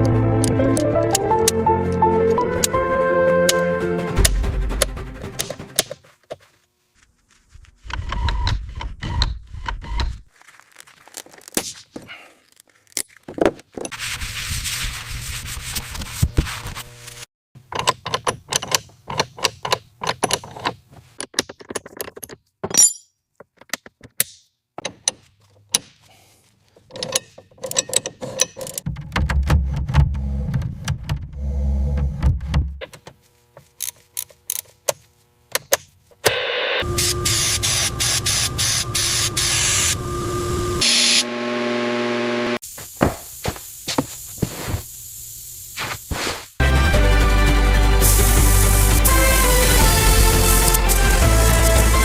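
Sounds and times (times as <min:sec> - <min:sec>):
metal parts clinking and scraping: 0:17.8 - 0:23.8, 0:26.7 - 0:28.8
hissing noise: 0:42.6 - 0:46.6, 0:48.0 - 0:50.9.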